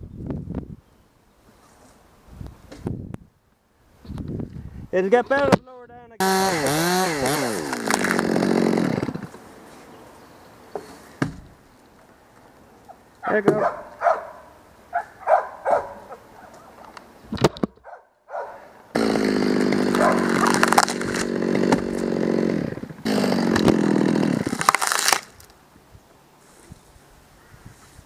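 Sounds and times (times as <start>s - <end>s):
chainsaw at full throttle: 6.2s - 9.3s, 18.9s - 25.3s.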